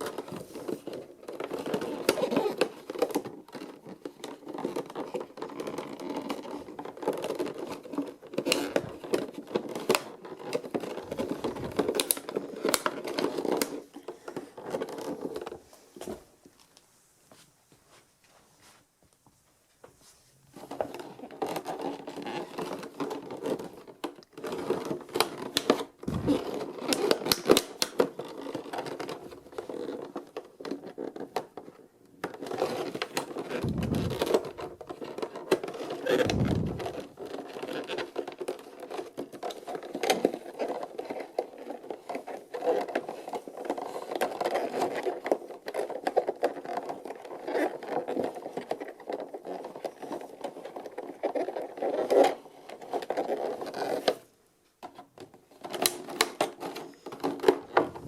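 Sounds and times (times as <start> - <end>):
plastic and cardboard crinkling: 0.0 - 16.9, 19.7 - 58.0
dull bumps: 33.6 - 34.7, 36.2 - 37.0.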